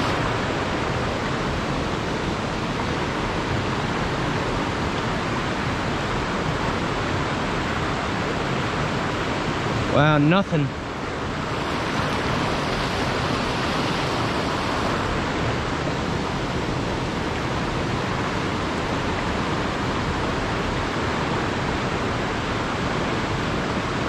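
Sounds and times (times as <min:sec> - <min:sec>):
mountain stream rushing: 0:00.0 - 0:24.0.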